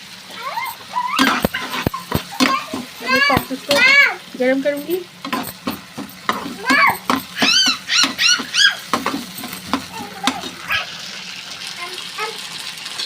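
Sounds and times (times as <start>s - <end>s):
low kitchen hum: 0.0s - 13.0s
child squealing: 0.3s - 4.2s, 6.5s - 9.0s, 9.8s - 11.0s.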